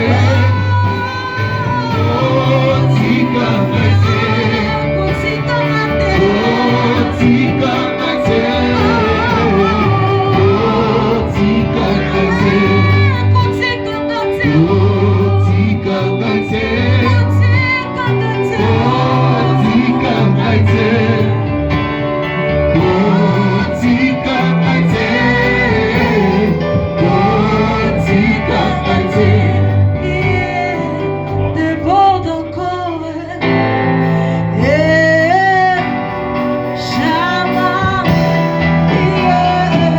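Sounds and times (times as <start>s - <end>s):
bass and guitar accompaniment: 0.0s - 39.9s
gospel singing voices: 0.0s - 39.9s.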